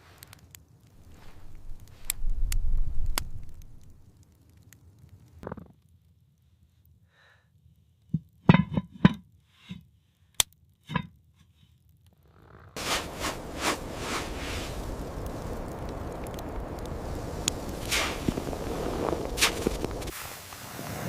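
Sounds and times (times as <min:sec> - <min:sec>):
steady rushing noise: 0:12.8 - 0:21.0.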